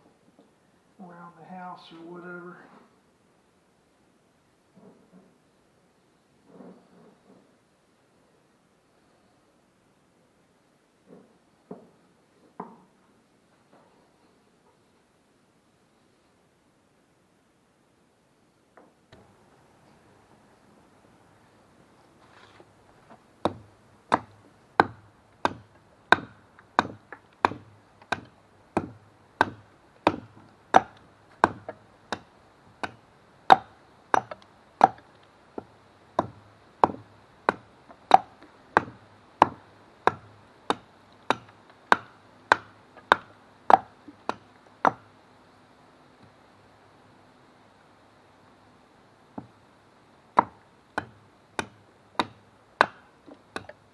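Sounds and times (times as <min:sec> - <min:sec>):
hatchet chopping wood: 0:23.4 - 0:45.1, 0:50.3 - 0:53.8.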